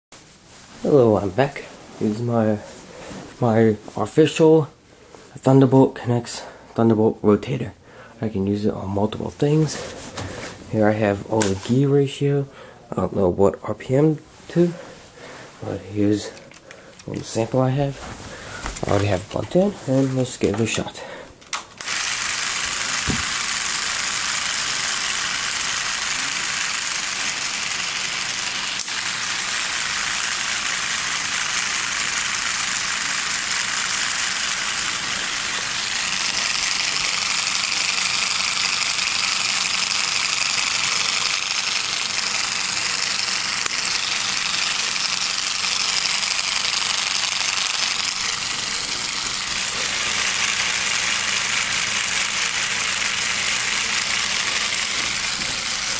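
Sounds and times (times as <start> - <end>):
high-pitched motor and gear whir: 21.8 - 55.9.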